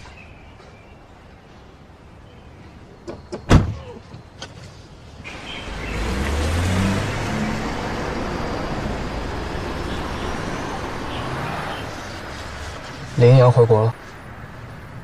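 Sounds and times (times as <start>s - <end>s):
car engine: 4.5s - 15.0s.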